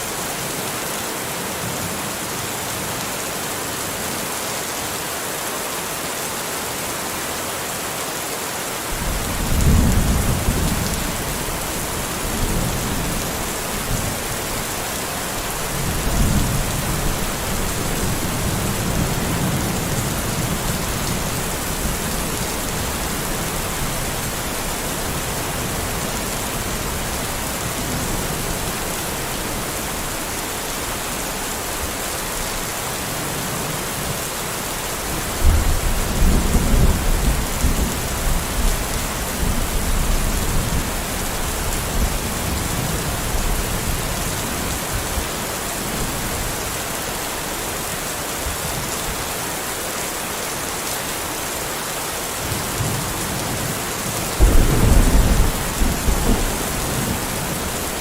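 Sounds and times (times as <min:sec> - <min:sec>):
steady rain: 0:00.0 - 0:58.0
thunder rumbling: 0:54.4 - 0:58.0.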